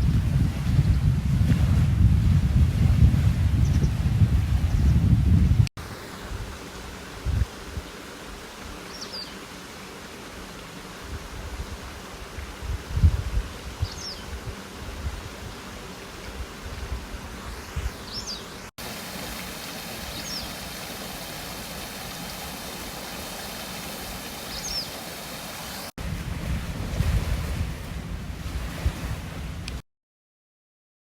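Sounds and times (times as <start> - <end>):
wind rumble on microphone: 0.0 - 7.9, 11.0 - 15.6, 26.0 - 29.8
mountain stream rushing: 18.8 - 26.0.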